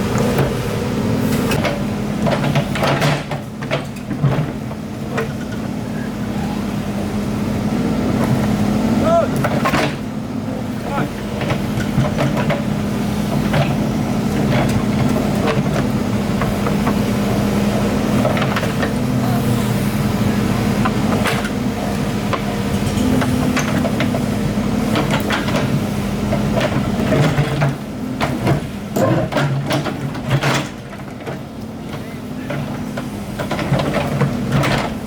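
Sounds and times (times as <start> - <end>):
diesel engine under load: 0.0 - 35.0
metallic clanks and knocks: 1.6 - 5.7, 9.4 - 10.1, 24.9 - 35.0.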